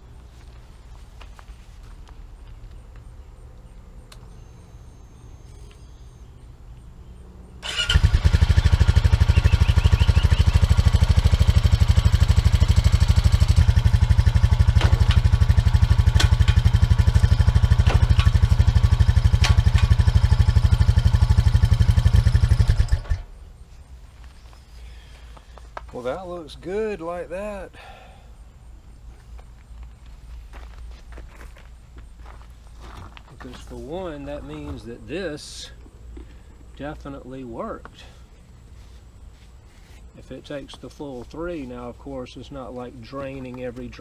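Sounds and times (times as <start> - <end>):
engine starting and idling: 7.6 - 23.3.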